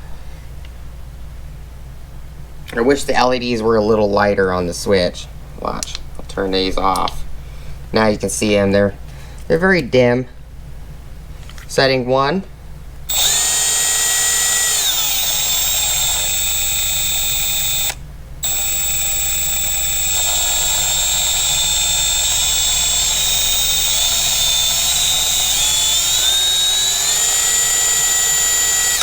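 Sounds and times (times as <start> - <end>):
impact wrench motor whine: 13.1 - 29.0.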